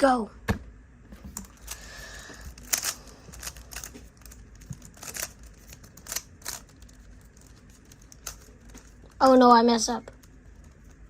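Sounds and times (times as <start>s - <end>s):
speedcube layers clicking: 2.5s - 9.2s.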